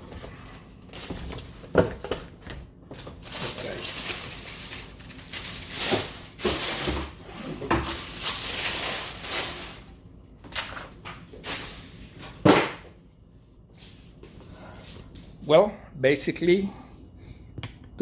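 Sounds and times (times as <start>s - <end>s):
packaging rustling: 0.2s - 2.2s, 2.9s - 9.9s.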